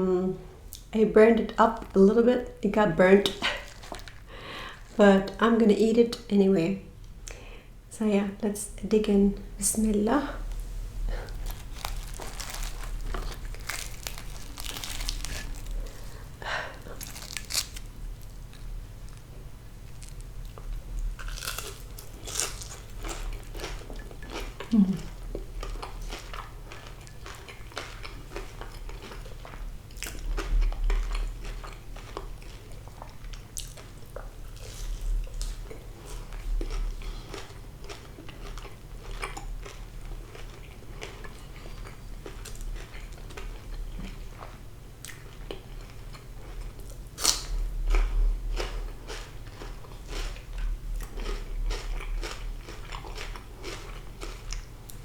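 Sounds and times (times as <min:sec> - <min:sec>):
wet chewing: 0:03.4 - 0:05.0, 0:10.5 - 0:19.2
crunching bites: 0:11.2 - 0:16.1, 0:16.8 - 0:17.9, 0:21.2 - 0:24.5.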